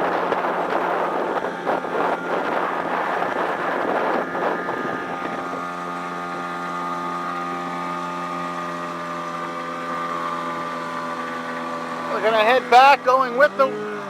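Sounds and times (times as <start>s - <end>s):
wind rushing over microphone: 0.0s - 12.7s
outboard motor running: 0.0s - 14.0s.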